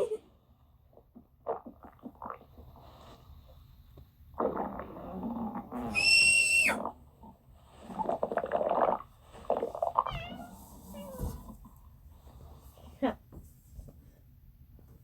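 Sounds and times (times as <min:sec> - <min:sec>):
stomach growling: 0:00.8 - 0:03.6, 0:04.3 - 0:11.9.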